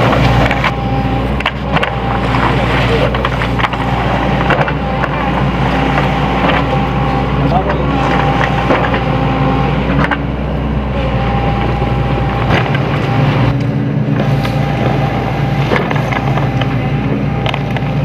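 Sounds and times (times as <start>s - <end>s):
excavator diesel engine running: 0.0s - 18.0s.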